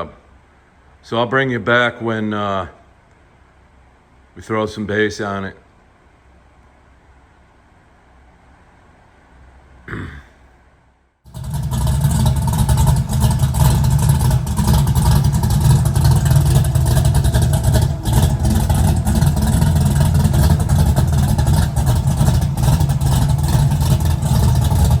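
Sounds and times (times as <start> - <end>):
loud engine rumbling: 11.3 - 25.0.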